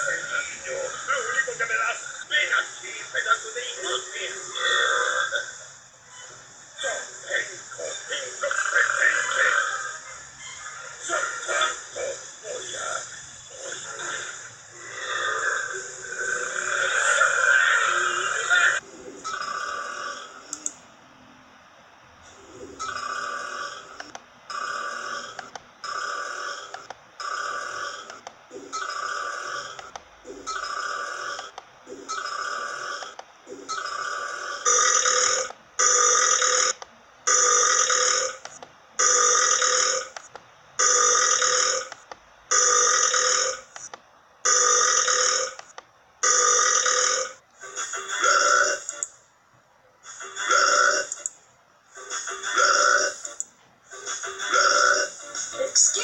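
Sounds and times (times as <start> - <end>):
person burping: 50.4 - 51.2, 52.5 - 53.2, 54.5 - 55.2.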